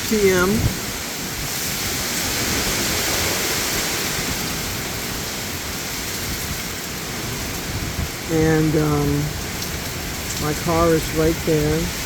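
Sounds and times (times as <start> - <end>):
heavy rain downpour: 0.0 - 12.0
strong wind: 0.0 - 12.0.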